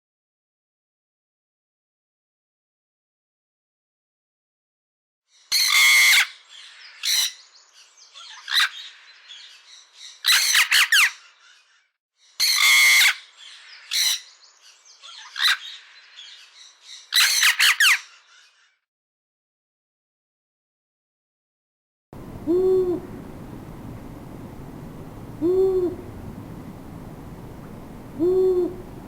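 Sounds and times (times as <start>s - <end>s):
bird squawking and calling: 5.5s - 7.4s, 8.2s - 11.6s, 12.4s - 14.4s, 15.0s - 18.6s, 22.3s - 29.0s
quiet bird chirps: 22.3s - 29.0s.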